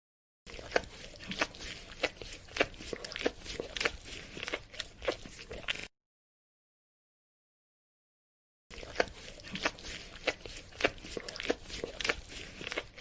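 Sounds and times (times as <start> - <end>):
dog licking: 0.5 - 5.9, 8.7 - 13.0.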